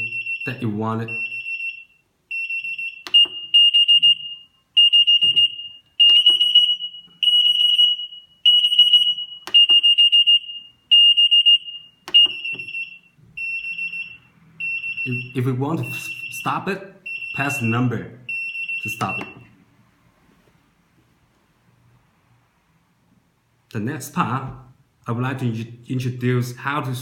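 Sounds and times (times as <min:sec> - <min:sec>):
kitchen timer alarm beeping: 0:00.0 - 0:19.5
clicks: 0:03.0 - 0:03.4, 0:09.4 - 0:09.8, 0:12.0 - 0:12.8.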